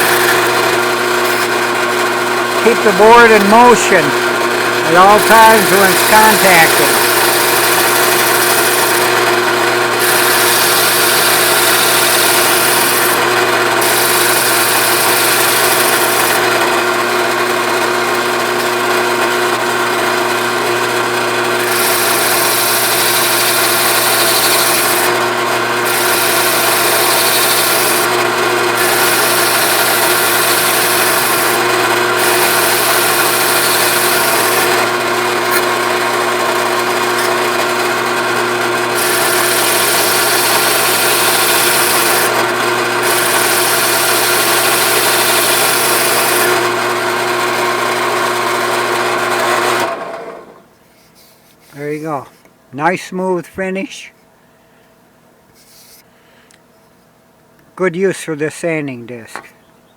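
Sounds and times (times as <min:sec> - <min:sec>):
drill press motor humming: 0:00.0 - 0:50.6
sanding disc hissing on wood: 0:10.0 - 0:13.2, 0:21.6 - 0:25.1, 0:25.8 - 0:28.1, 0:28.8 - 0:31.6, 0:32.2 - 0:34.8.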